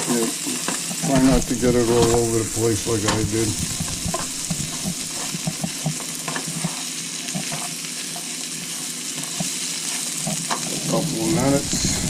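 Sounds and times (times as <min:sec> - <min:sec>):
food sizzling in a pan: 0:00.0 - 0:12.0
stirring clicks and knocks: 0:00.6 - 0:08.3.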